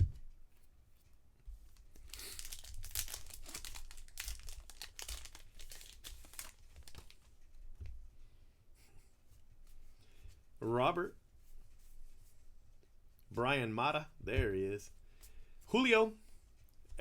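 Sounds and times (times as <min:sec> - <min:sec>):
wrapper crinkling and tearing: 0:01.8 - 0:07.3.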